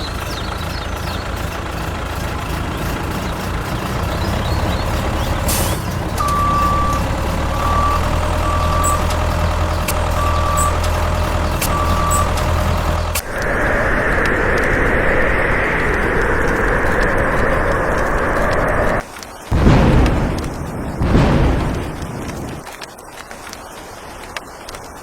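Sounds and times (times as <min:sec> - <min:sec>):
heavy vehicle engine running: 0:00.0 - 0:22.6
hiss: 0:05.4 - 0:05.9, 0:13.2 - 0:19.0
reversing beeper beeps: 0:05.5 - 0:19.0.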